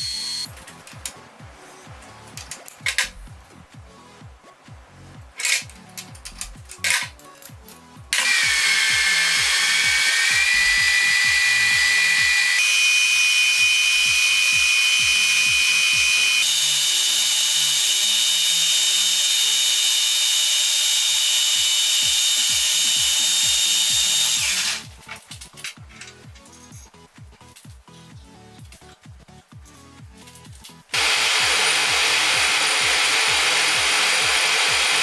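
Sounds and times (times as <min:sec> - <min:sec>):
clicks: 0:08.2 - 0:16.5
lathe high-pitched whine: 0:08.2 - 0:24.8, 0:31.0 - 0:35.0.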